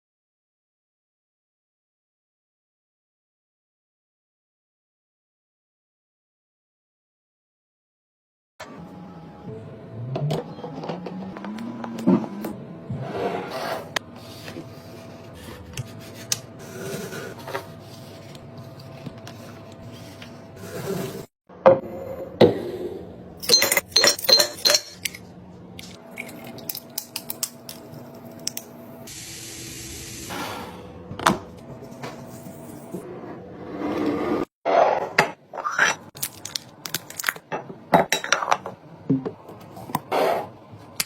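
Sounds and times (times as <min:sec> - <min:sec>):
dishes and bottles clinking: 0:23.4 - 0:25.2, 0:37.5 - 0:39.3.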